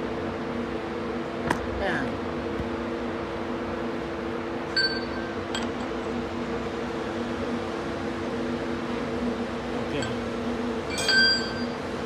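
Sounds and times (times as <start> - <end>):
steady machine hum: 0.0 - 12.0
metallic clink: 10.9 - 11.8.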